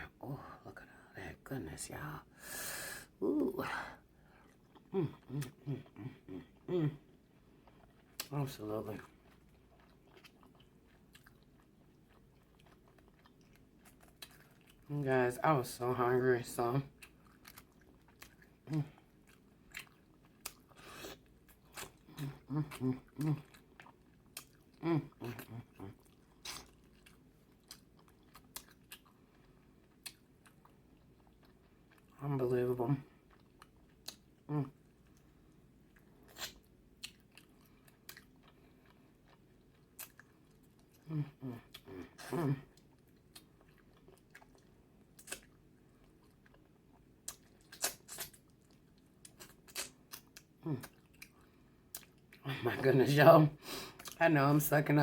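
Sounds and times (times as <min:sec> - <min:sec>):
person humming: 0:03.2 - 0:03.9, 0:04.9 - 0:07.0
wet chewing and lip smacks: 0:04.3 - 0:14.9, 0:16.9 - 0:32.2, 0:33.0 - 0:52.4, 0:53.9 - 0:54.2
wet lip smacks: 0:47.2 - 0:48.4.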